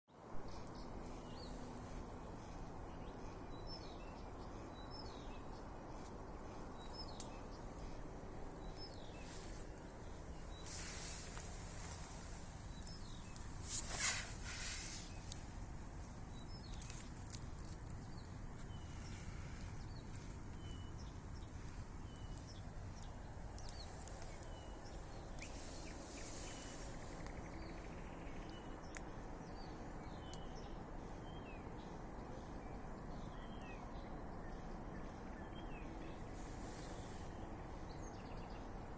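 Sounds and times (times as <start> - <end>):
birds chirping: 0.3 - 38.9.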